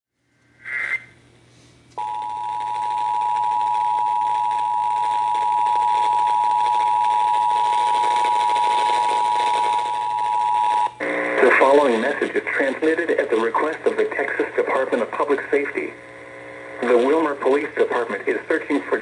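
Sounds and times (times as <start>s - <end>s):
radio hiss: 0.6s - 1.2s, 5.9s - 19.0s.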